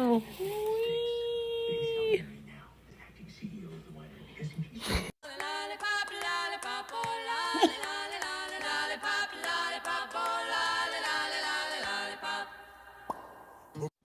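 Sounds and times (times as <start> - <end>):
person singing unaccompanied: 5.2 - 12.5.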